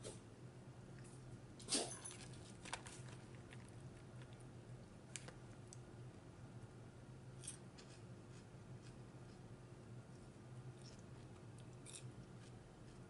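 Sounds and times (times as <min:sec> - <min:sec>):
chewing crunchy salad: 0:10.8 - 0:13.0.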